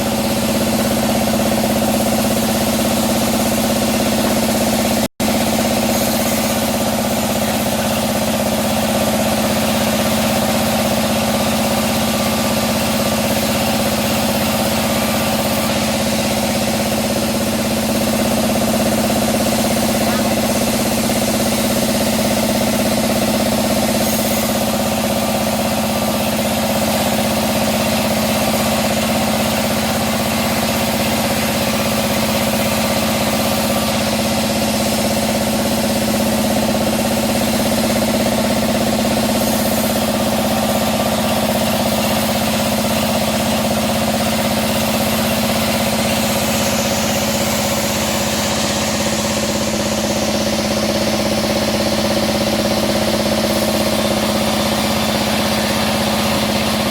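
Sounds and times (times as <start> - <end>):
bandsaw humming: 0.0 - 56.4.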